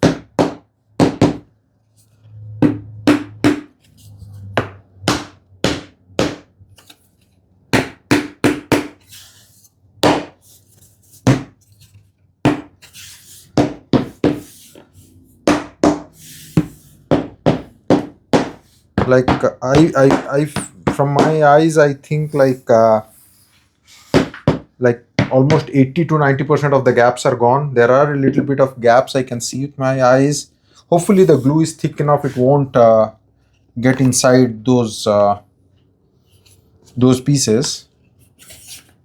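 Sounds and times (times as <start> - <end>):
hammer tapping wooden wedges: 0.0 - 1.5, 4.6 - 6.9, 11.3 - 11.6, 12.5 - 12.8, 13.6 - 14.9, 15.5 - 21.6, 24.1 - 25.7.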